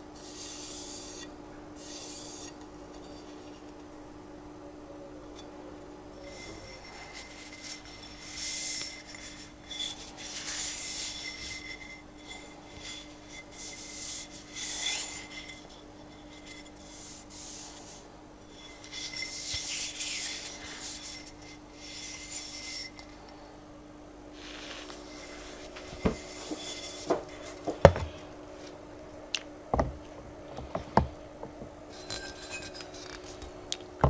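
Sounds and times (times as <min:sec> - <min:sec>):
whetstone rubbing and scraping: 0:00.2 - 0:03.7, 0:06.2 - 0:23.3, 0:24.5 - 0:27.6, 0:31.9 - 0:33.4.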